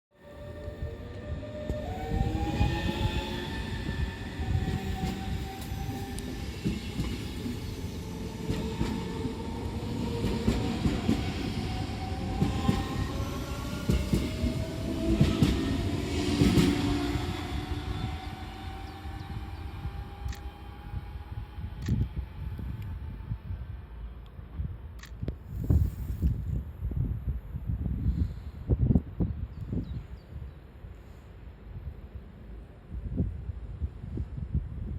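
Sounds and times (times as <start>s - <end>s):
electric train whining: 0.2s - 24.2s.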